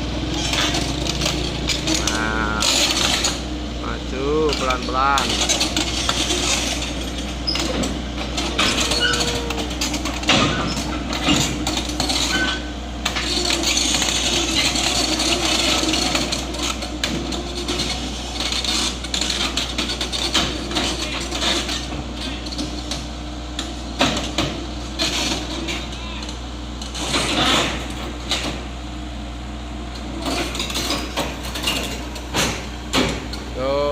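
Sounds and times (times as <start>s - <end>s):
excavator diesel engine running: 0.0s - 33.9s
metallic clanks from tracks: 30.2s - 33.5s.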